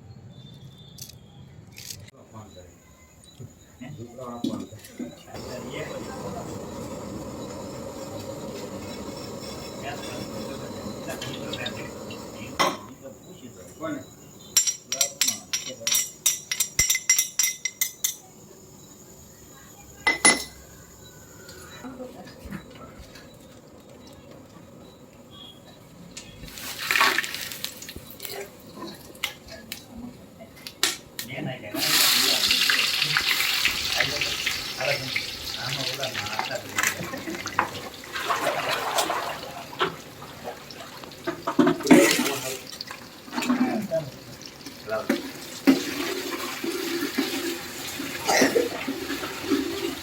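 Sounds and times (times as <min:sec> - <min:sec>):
water pouring and splashing: 0:26.5 - 0:29.2, 0:31.8 - 0:50.0.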